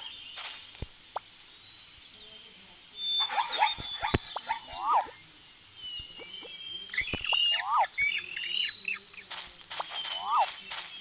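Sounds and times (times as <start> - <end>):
birds chirping: 0.0 - 11.0
rise-and-fall bird call: 5.8 - 11.0.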